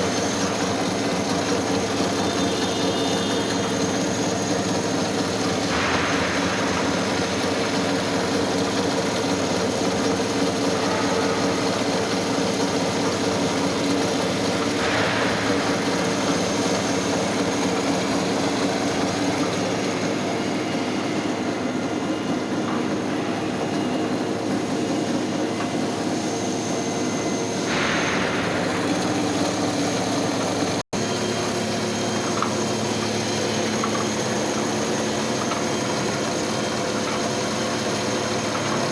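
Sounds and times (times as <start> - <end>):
milling machine humming: 0.0 - 38.9.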